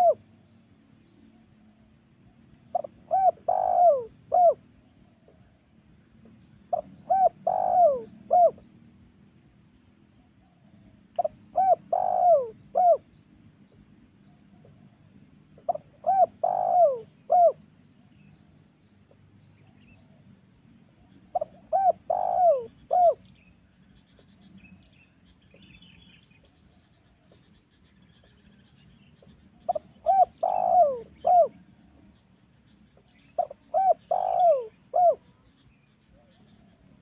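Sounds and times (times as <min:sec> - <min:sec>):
dove cooing: 0:00.0 - 0:00.3, 0:02.7 - 0:05.4, 0:06.7 - 0:08.6, 0:10.4 - 0:13.1, 0:15.6 - 0:17.6, 0:21.3 - 0:23.3, 0:29.2 - 0:32.0, 0:33.2 - 0:35.4.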